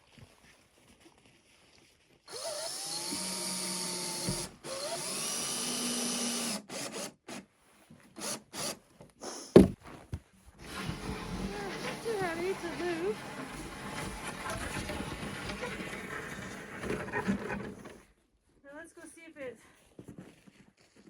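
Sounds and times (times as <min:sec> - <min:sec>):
power drill driving screws: 0:02.3 - 0:07.5, 0:08.2 - 0:09.6, 0:10.6 - 0:18.0.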